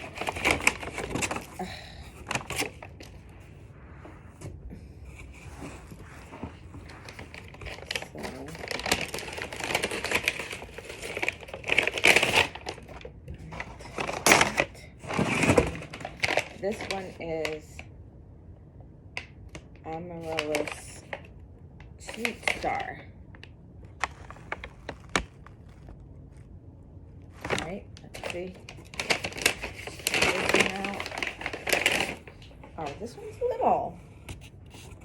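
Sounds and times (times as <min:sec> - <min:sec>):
packaging rustling and crinkling: 0:00.0 - 0:17.6, 0:19.5 - 0:21.3, 0:22.0 - 0:35.0.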